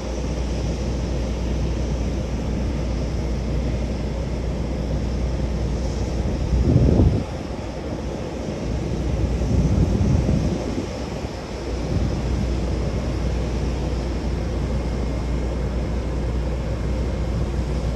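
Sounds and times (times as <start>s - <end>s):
steady low rumble: 0.0s - 17.9s
wind buffeting microphone: 5.2s - 17.9s.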